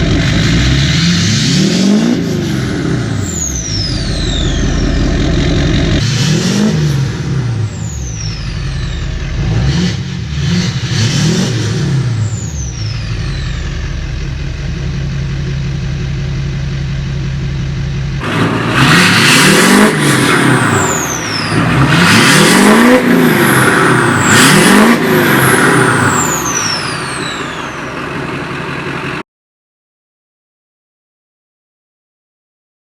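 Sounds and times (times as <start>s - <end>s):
diesel engine idling and revving: 0.0s - 29.2s
turbo whistle: 3.4s - 5.2s, 12.4s - 14.0s, 25.6s - 28.0s.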